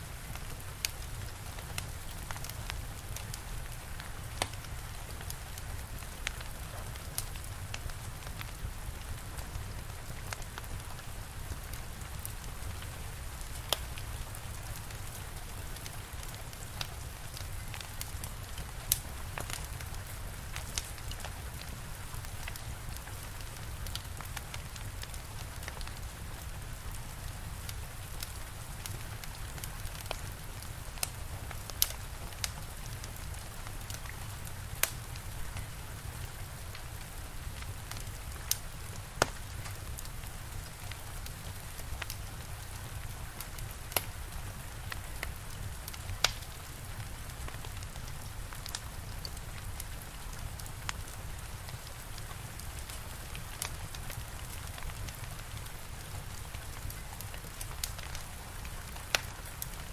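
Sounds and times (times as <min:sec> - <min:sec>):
steady rain hissing: 0:00.0 - 0:59.9
wood fire crackling: 0:00.0 - 0:59.9.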